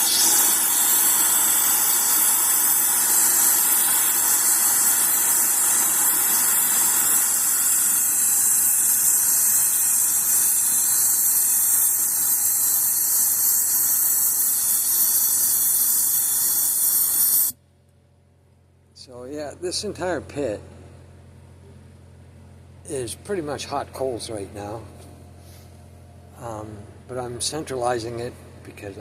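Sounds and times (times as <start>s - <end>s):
forge blower rushing air: 0.0s - 17.6s.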